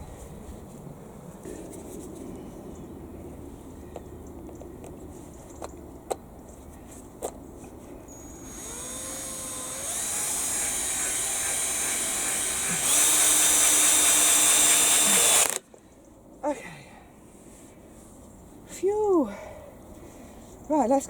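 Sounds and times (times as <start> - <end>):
power drill whining: 8.1 - 15.6.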